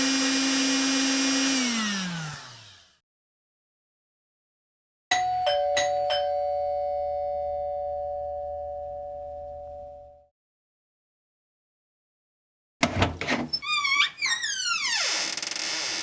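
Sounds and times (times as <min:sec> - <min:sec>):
two-tone doorbell chime: 0:05.1 - 0:10.3.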